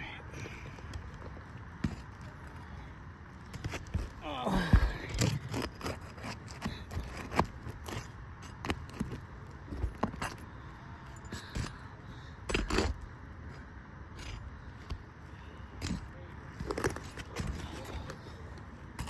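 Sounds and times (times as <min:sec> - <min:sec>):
tools scraping and knocking shingles: 0:03.4 - 0:10.5, 0:15.8 - 0:19.0.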